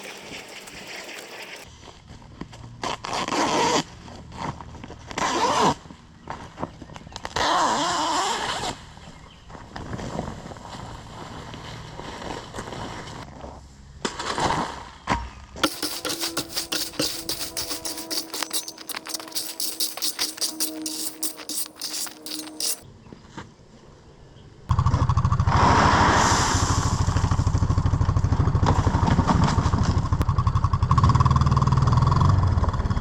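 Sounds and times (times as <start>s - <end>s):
crushed stone scraping and crunching: 15.6s - 22.8s
music with shaker rattle: 15.6s - 22.8s.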